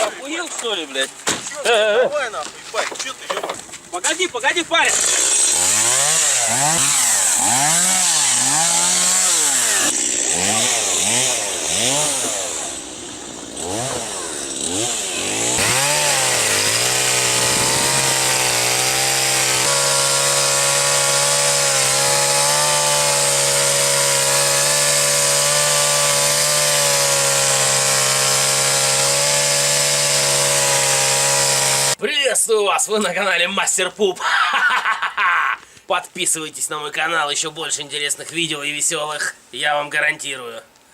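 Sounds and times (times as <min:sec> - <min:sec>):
chainsaw engine revving: 0:04.8 - 0:32.0.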